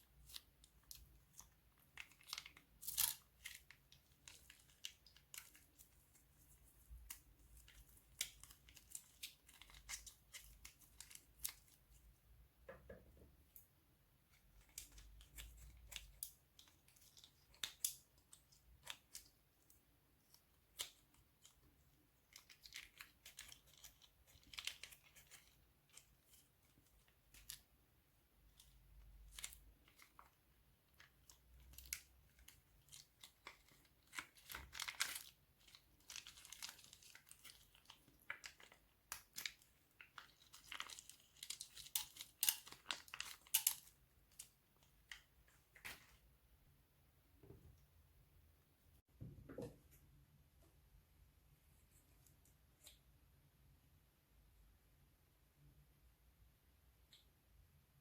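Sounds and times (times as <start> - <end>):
plastic crinkles: 0.0 - 12.0, 14.3 - 19.6, 20.2 - 27.8, 28.4 - 46.2.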